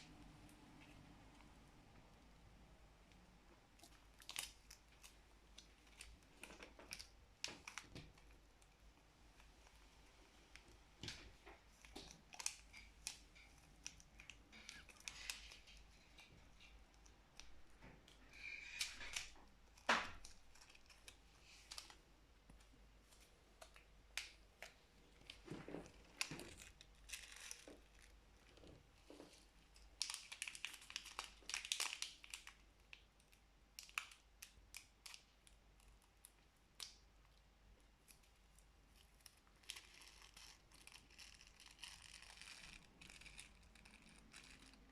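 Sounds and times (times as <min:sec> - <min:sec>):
plastic packaging crinkling: 0:03.8 - 0:08.7, 0:10.5 - 0:22.0, 0:23.1 - 0:33.1, 0:38.9 - 0:44.9.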